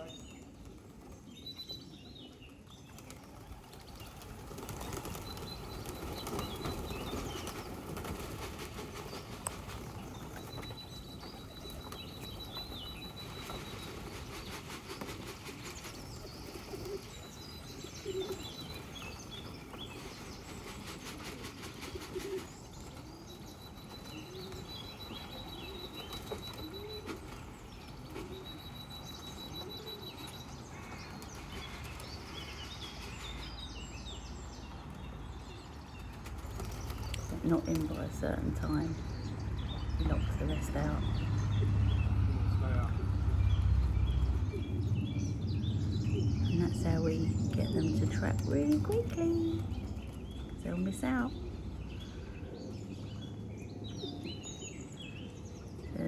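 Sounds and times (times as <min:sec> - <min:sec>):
pigeons cooing: 0:00.0 - 0:33.7, 0:35.3 - 0:54.6
pigeons flapping wings: 0:00.0 - 0:39.6, 0:47.3 - 0:50.6.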